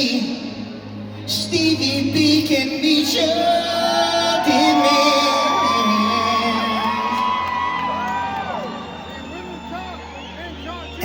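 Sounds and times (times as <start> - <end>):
crowd cheering and whooping: 3.2 - 11.0.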